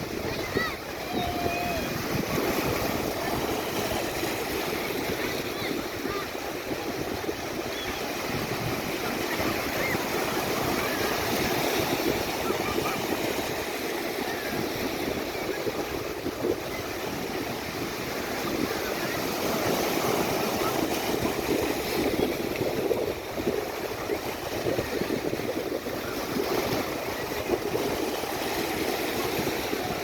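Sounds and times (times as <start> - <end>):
waves breaking: 0.0 - 30.0.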